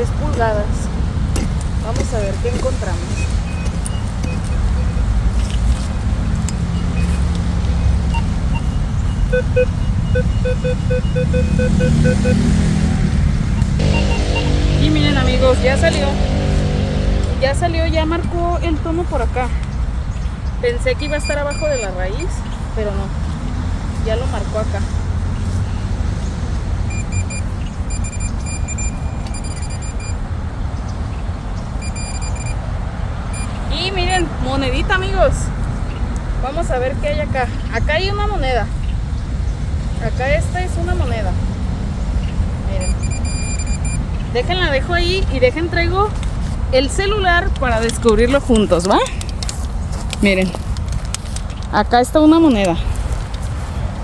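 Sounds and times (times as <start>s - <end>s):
metal detector beeping: 6.8s - 15.3s, 21.0s - 22.4s, 26.9s - 30.2s, 31.8s - 32.6s, 33.3s - 34.3s, 42.8s - 44.7s
steady low rumble: 12.9s - 25.3s.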